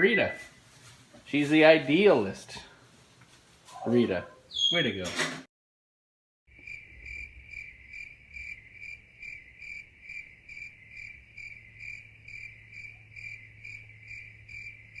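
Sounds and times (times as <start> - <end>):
cricket chirping: 6.5 - 15.0.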